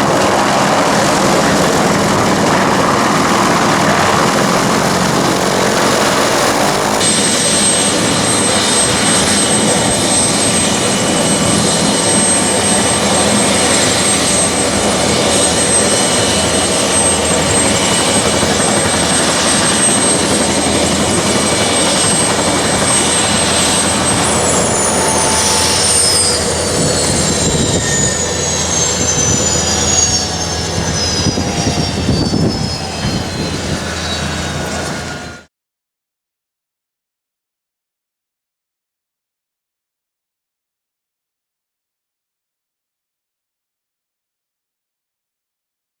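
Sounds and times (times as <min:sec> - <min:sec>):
helicopter rotor noise: 0:00.0 - 0:35.5
high turbine whine: 0:00.0 - 0:35.5.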